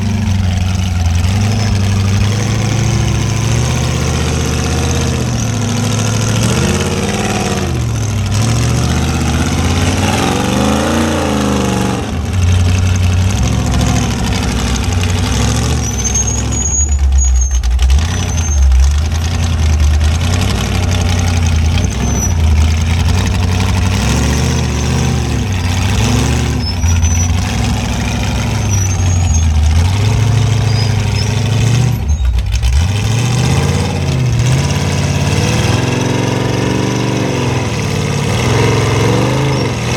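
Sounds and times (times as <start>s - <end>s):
high squeaks: 0.0s - 6.0s, 13.6s - 19.5s, 20.7s - 33.0s
engine idling and revving: 0.0s - 39.9s.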